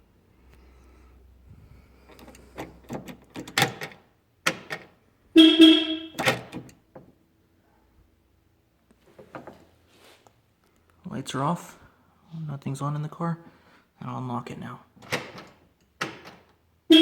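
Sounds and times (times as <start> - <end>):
car horn alarm chirp: 5.4 - 6.2.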